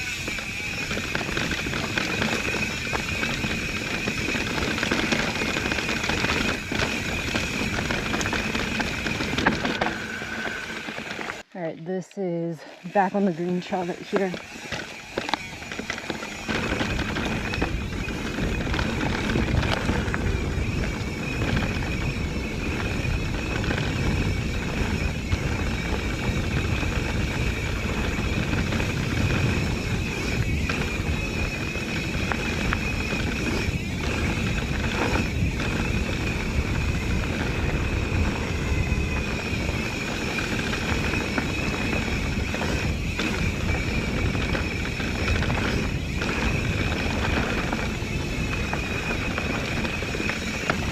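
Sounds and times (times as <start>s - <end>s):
bike rattling over bumps: 0.0s - 11.5s, 12.8s - 50.9s
bike tyres rumbling on dirt: 0.0s - 11.5s, 12.8s - 50.9s
wind on microphone: 13.8s - 50.9s.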